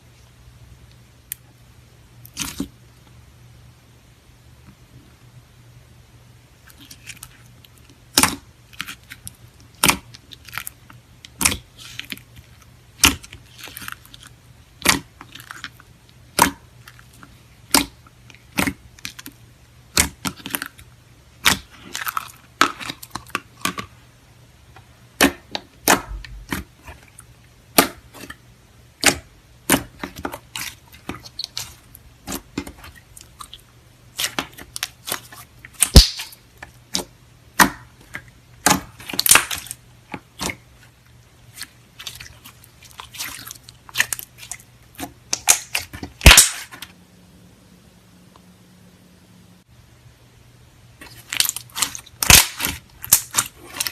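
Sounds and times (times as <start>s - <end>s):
slime crackling and squelching: 6.6s - 23.9s, 29.0s - 46.9s, 51.0s - 53.9s.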